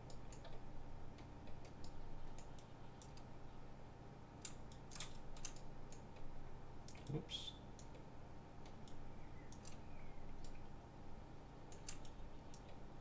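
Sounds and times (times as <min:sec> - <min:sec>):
faint steady hum: 0:00.0 - 0:13.0
mouse and keyboard clicks: 0:01.5 - 0:03.3, 0:04.4 - 0:06.0, 0:08.7 - 0:09.8, 0:11.7 - 0:12.8.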